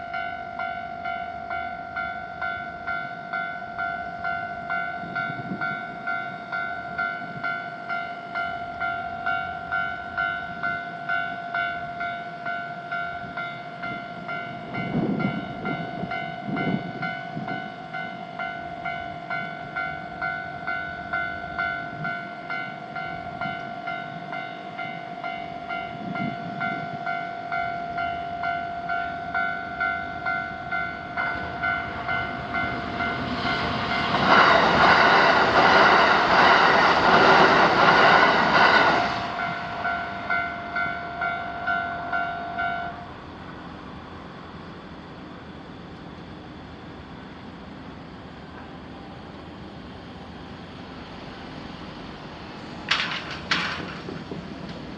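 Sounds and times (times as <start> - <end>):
level crossing alarm bell: 0.0 - 33.3, 39.4 - 43.1
train passing: 0.0 - 54.9.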